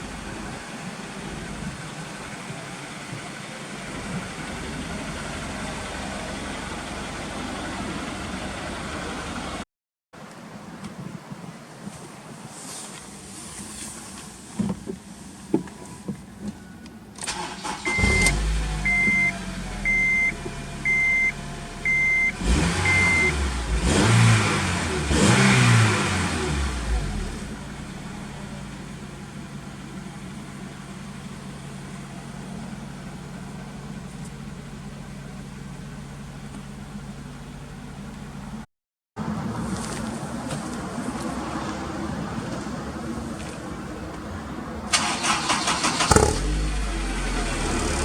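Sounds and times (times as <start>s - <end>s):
car engine idling: 0.0s - 9.6s, 17.3s - 23.9s, 26.6s - 38.6s, 44.9s - 48.0s
car engine starting and revving: 17.2s - 33.5s, 44.9s - 48.0s
warning chime beeping: 21.9s - 23.4s.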